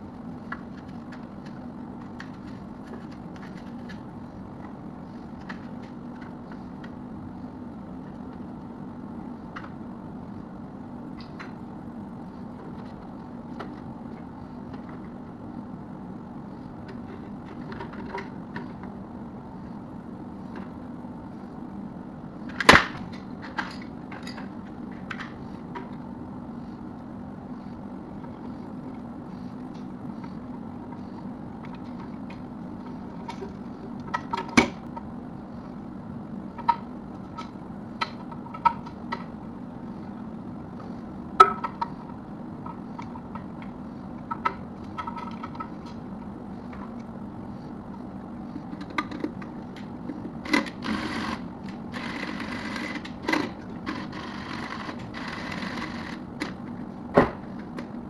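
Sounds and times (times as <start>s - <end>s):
steady low hum: 0.0s - 58.0s.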